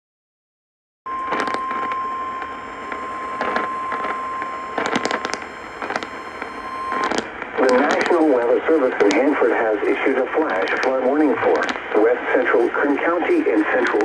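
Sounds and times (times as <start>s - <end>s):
steady warning alarm tone: 1.1s - 10.0s
radio static hiss and crackles: 1.2s - 14.0s.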